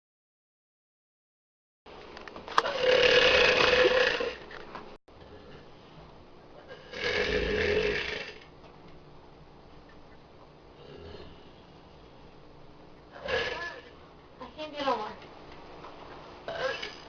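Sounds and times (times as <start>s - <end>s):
girl burping: 16.5s - 17.0s.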